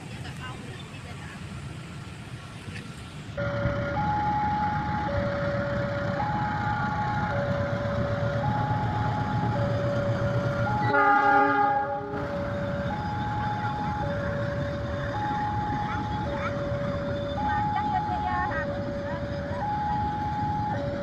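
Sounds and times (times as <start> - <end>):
diesel train rumbling past: 0.0 - 21.0
two-tone warning alarm: 3.4 - 21.0
locomotive horn blast: 10.6 - 12.4.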